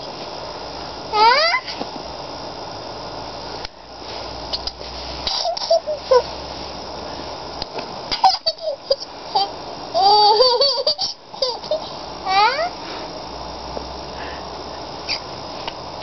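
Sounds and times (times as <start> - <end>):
young child giggling: 5.3 - 6.3, 8.1 - 11.8.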